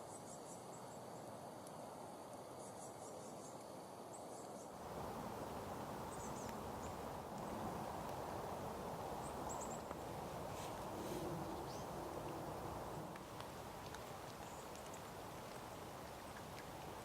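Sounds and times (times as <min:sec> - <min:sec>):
small birds chirping: 0:05.2 - 0:13.0, 0:13.6 - 0:17.0
faint clicks: 0:10.7 - 0:17.0.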